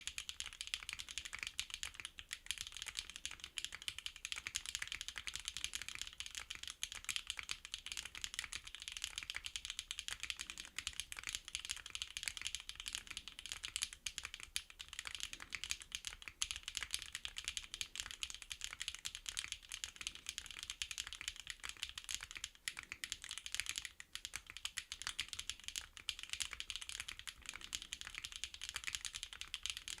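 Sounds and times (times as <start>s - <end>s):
mechanical keyboard typing: 0.0s - 30.0s.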